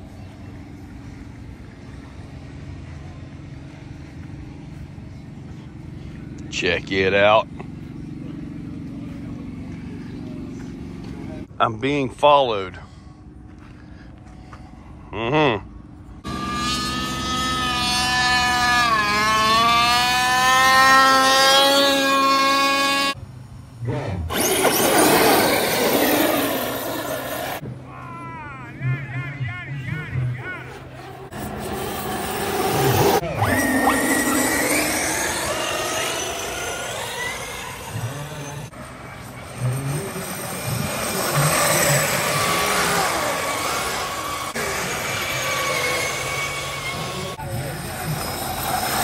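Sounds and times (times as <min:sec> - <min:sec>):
rc truck motor running hard: 0:16.2 - 0:23.2, 0:23.8 - 0:27.6, 0:30.8 - 0:49.0.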